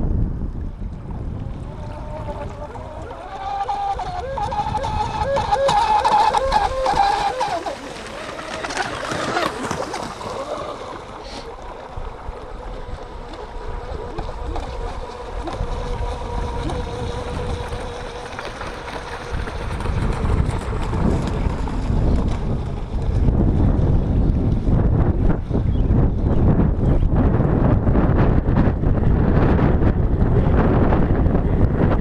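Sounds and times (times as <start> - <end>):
wind buffeting microphone: 0.0 - 32.0
electric boat motor whining: 0.9 - 24.8.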